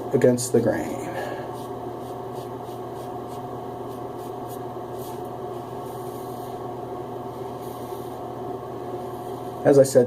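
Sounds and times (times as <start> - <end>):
steady background hum: 0.0 - 10.0
razor scraping over scalp: 1.5 - 6.6.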